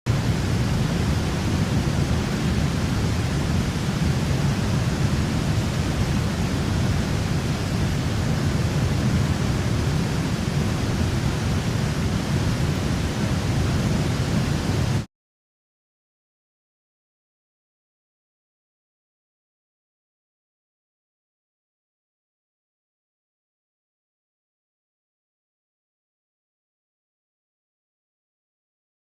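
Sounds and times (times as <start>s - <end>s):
waterfall roaring: 0.1s - 15.1s.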